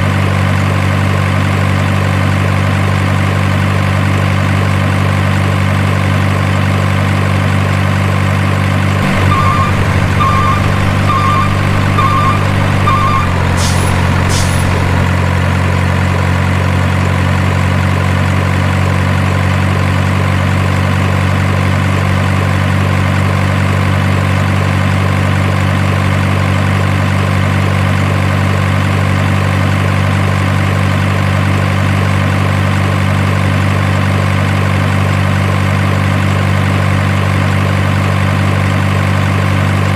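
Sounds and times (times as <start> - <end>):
reversing beeps: 9.0 - 15.2
diesel truck engine idling: 9.0 - 18.2
short air hisses: 13.6 - 15.0.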